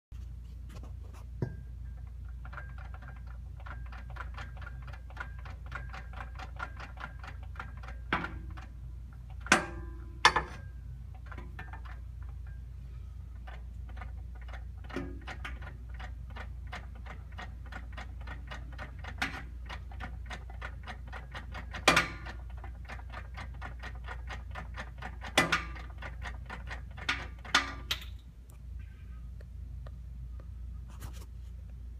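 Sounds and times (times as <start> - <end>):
transmission ticking and clicking: 2.0 - 9.6, 13.4 - 28.6.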